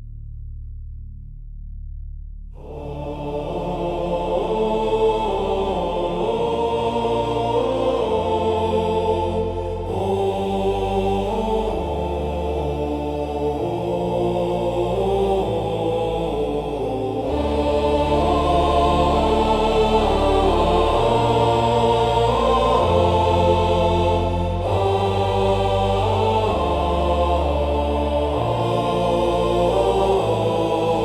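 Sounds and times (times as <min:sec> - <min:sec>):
deep sustained bass notes: 0:00.0 - 0:31.0
low wordless choral chanting: 0:02.6 - 0:31.0.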